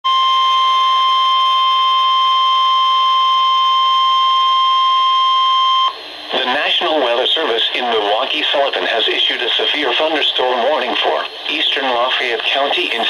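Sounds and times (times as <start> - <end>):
high-pitched alarm tone: 0.1 - 6.0.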